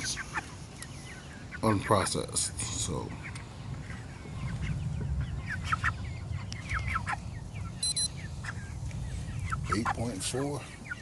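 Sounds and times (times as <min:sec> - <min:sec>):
chickens clucking: 0:00.0 - 0:11.0
electronic beep: 0:07.8 - 0:08.1.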